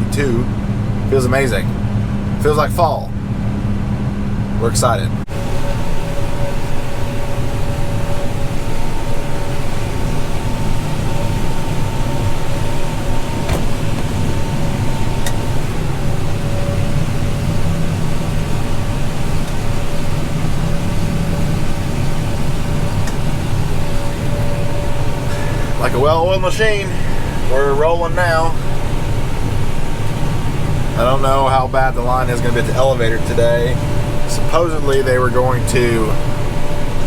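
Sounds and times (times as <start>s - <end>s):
farm machine engine droning: 0.0s - 37.0s
steady whining tones: 0.0s - 37.0s.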